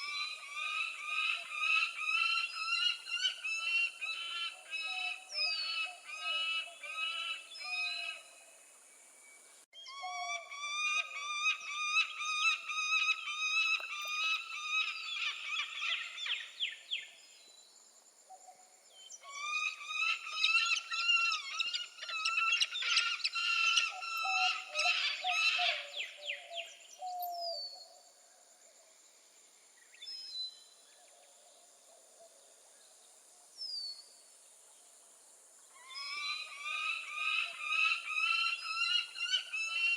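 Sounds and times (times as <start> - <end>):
falcon calling: 19.2 - 27.2, 35.8 - 39.9.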